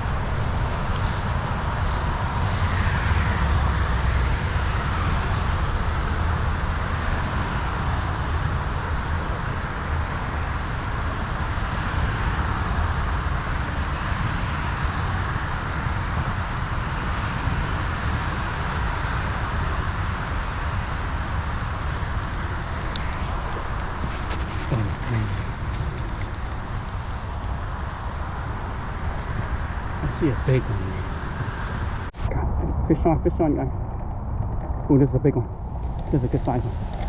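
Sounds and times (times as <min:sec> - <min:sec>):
heavy rain falling: 0:00.0 - 0:12.5.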